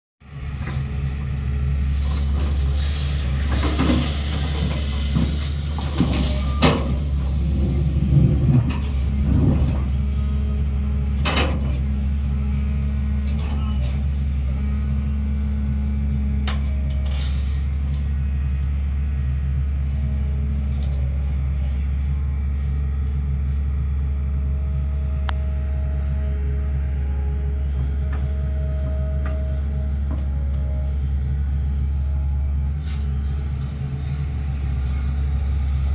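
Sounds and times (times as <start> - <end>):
excavator diesel engine running: 0.2 - 35.9.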